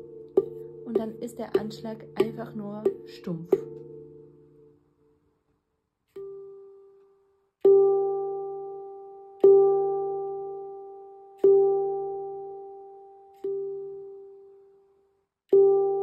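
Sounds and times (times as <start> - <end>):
handpan note ringing: 0.0 - 4.7, 7.7 - 14.3, 15.6 - 16.0.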